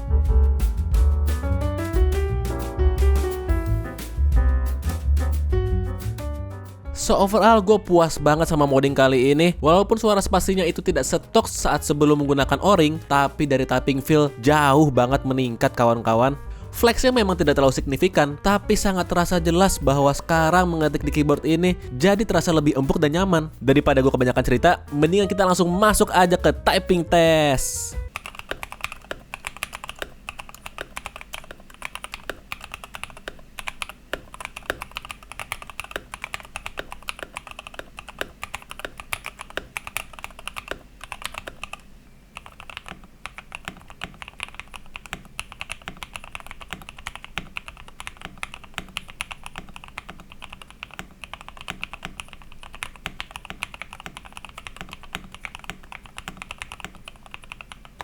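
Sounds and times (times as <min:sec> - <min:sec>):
mechanical keyboard typing: 0:28.1 - 0:58.0.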